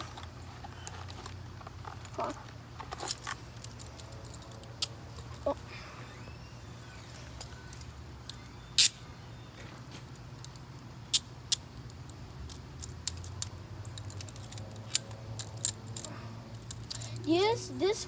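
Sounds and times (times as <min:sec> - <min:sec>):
metal handcuffs clinking: 0:00.8 - 0:05.7, 0:06.8 - 0:09.0, 0:10.1 - 0:17.6.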